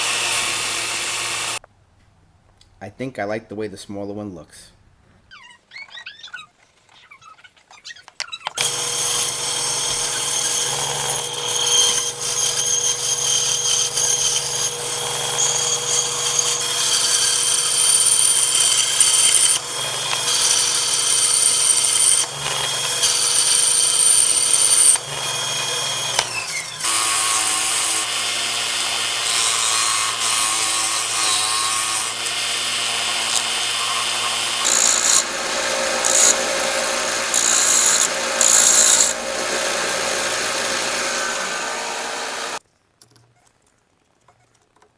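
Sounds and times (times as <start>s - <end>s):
electric power tool on wood: 0.0s - 1.6s, 8.6s - 42.6s.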